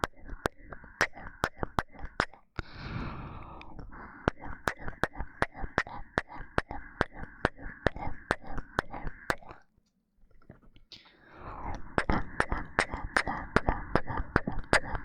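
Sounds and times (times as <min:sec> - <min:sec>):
wet lip smacks: 0:03.6 - 0:09.7, 0:11.7 - 0:15.0.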